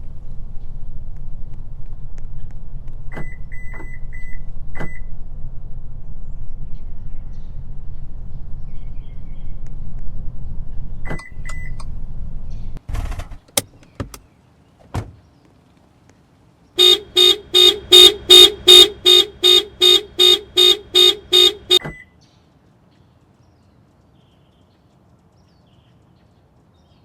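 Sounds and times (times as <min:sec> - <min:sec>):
low engine rumble: 0:13.7 - 0:21.8
horn honks: 0:16.8 - 0:21.9.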